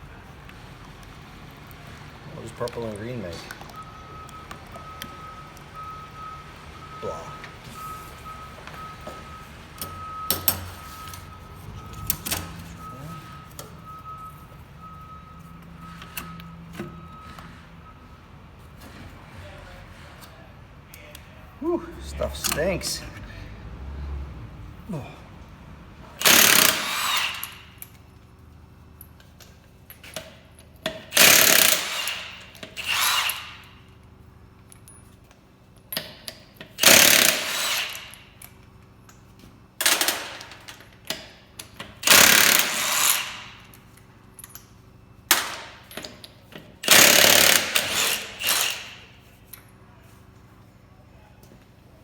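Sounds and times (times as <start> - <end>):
impact wrench bursts: 26.0 - 28.0, 30.2 - 33.8, 36.6 - 38.4, 39.8 - 40.6, 41.8 - 43.8, 46.8 - 49.3.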